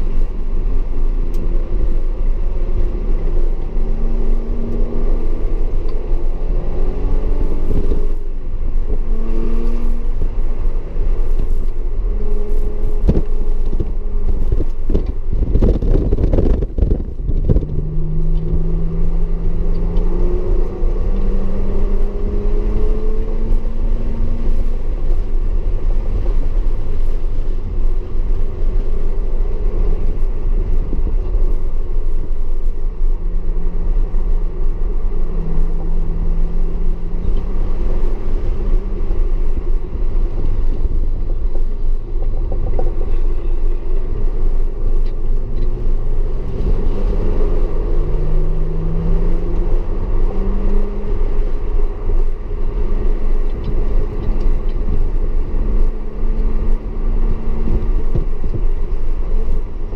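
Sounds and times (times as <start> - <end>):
car engine revving: 0.0 - 59.9
road noise: 0.0 - 59.9.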